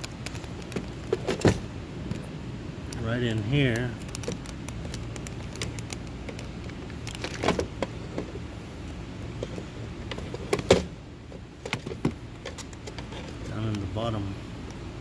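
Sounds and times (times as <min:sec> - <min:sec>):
steady low hum: 0:00.0 - 0:15.0
clicks and knocks of handled part: 0:02.9 - 0:08.3.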